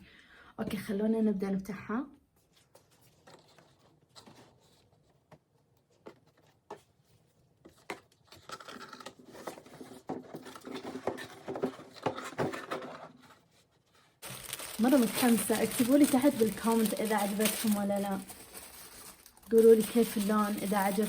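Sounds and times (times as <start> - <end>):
packaging rustling: 7.8 - 21.0.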